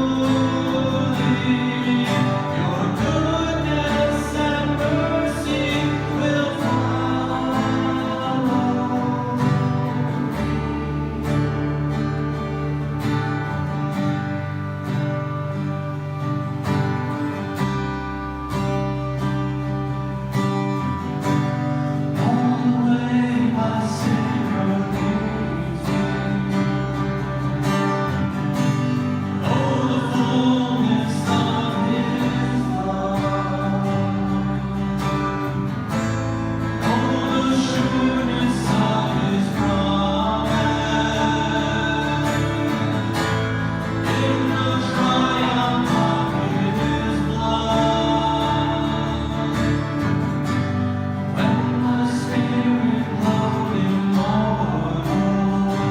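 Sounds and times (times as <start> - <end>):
person singing: 0.0 - 11.9, 22.1 - 28.0, 29.2 - 35.5, 36.7 - 50.2, 51.3 - 55.9
strummed acoustic guitar: 0.0 - 55.9.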